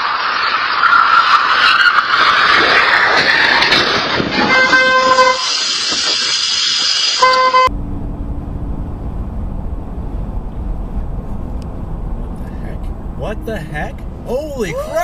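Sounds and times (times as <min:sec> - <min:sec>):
loud rushing vehicle noise: 0:00.0 - 0:15.0
vehicle horn honking: 0:04.4 - 0:05.6, 0:07.2 - 0:07.7.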